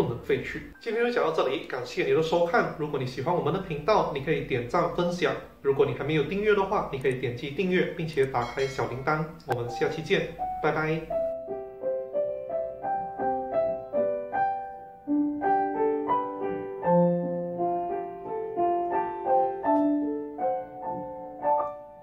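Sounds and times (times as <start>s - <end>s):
gentle piano melody: 5.9s - 22.0s.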